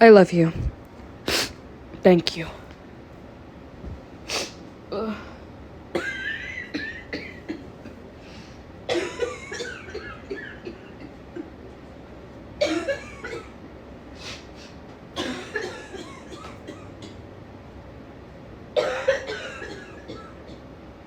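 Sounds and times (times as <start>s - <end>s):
woman coughing: 5.9s - 7.7s, 8.9s - 11.5s, 12.6s - 13.6s, 15.2s - 17.2s, 18.8s - 20.6s.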